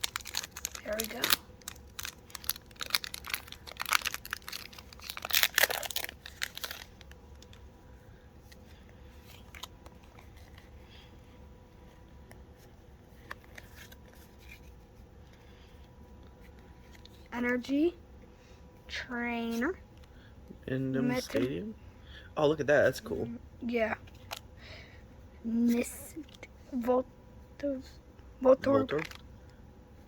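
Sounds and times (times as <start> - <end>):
foil wrapper crinkling and tearing: 0.0 - 7.6, 28.8 - 29.2.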